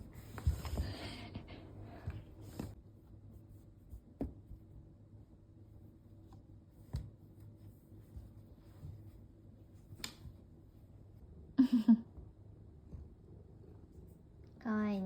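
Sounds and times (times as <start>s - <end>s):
faint rubbing and rustling: 5.6s - 11.2s.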